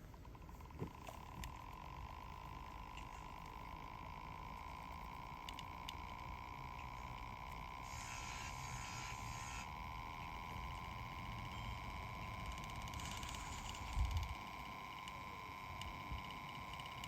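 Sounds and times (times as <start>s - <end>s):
washing machine motor whine: 0.0s - 17.0s
hiss: 7.8s - 9.6s.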